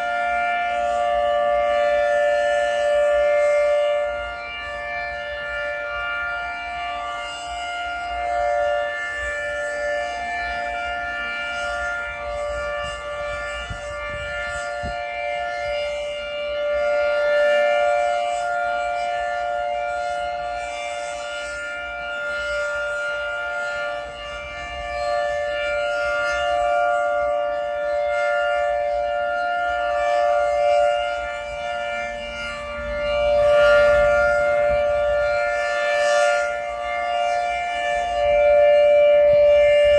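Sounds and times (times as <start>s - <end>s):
two-tone rotating warning siren: 0.0s - 39.9s.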